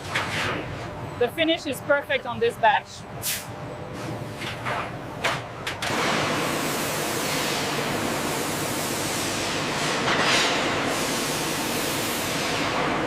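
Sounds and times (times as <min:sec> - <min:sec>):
industrial rushing hiss: 0:05.9 - 0:13.0.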